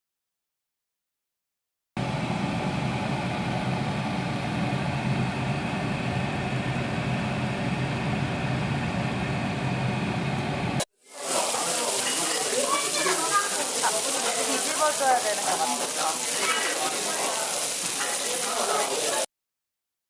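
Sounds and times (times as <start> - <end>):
low mechanical hum: 2.0 - 10.8.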